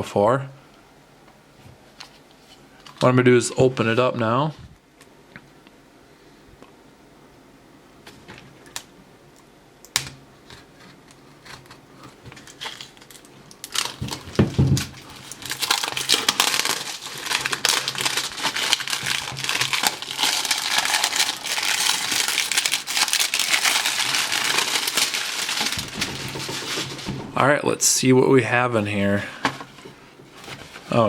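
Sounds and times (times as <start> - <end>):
plastic wrapping crinkling: 10.6 - 27.5.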